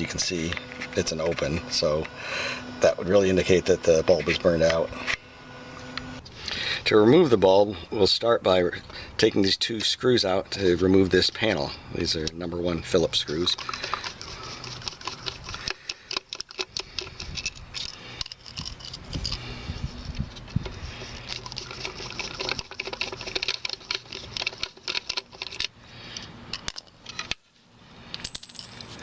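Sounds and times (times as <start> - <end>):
screwdriver clicking and scraping: 0.0 - 6.2, 12.2 - 27.4.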